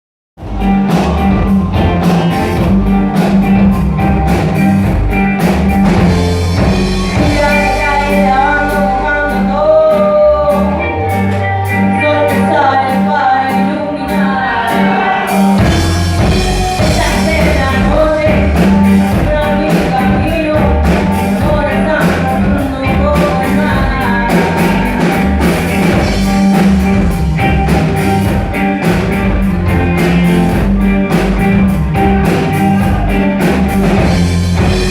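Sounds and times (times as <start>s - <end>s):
rock music with drums: 0.4s - 34.9s
person singing: 6.4s - 28.7s.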